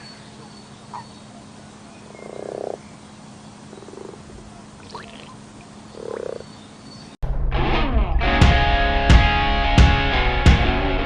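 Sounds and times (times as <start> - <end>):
frog croaking: 0.9 - 3.0, 3.6 - 6.6
faint high chirps: 4.4 - 7.2.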